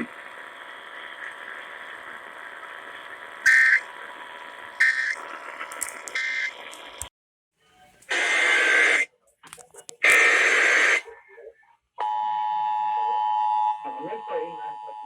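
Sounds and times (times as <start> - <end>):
steady radio hiss: 0.0 - 7.1, 7.7 - 11.5
digital data tone squawks: 3.4 - 3.9, 4.8 - 5.2, 6.1 - 6.6, 8.1 - 9.1, 10.0 - 11.1.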